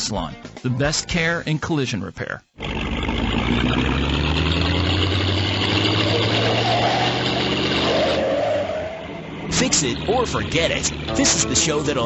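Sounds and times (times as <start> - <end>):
vehicle engine running: 2.6 - 8.2, 9.0 - 12.0.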